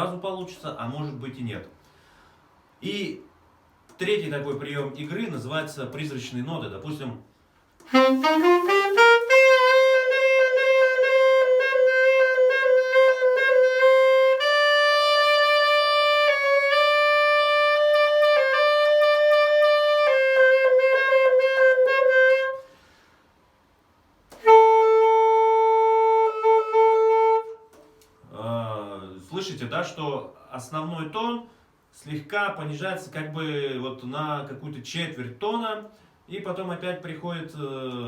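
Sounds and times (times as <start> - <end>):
saxophone playing long held notes: 7.8 - 22.8, 24.3 - 27.8.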